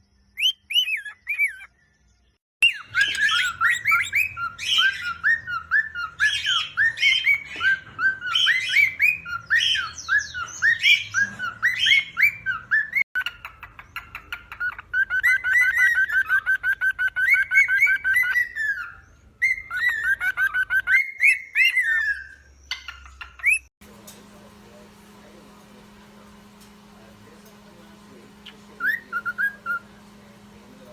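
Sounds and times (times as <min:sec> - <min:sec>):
cockatiel whistled chirps: 0:00.4 - 0:01.7, 0:02.6 - 0:13.0, 0:14.1 - 0:23.7, 0:28.4 - 0:29.9
bird chatter of short notes: 0:24.2 - 0:30.9.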